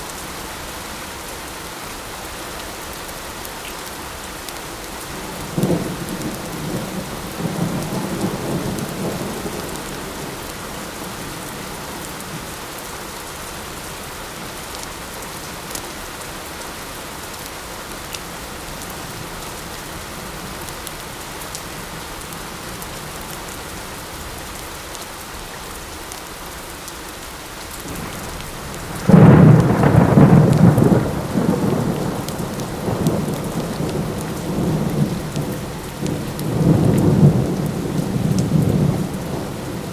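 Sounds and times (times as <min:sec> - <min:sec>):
light rain: 0:00.0 - 0:39.9
loud thunderclap: 0:27.9 - 0:39.8
thunder rumbling: 0:27.9 - 0:39.9.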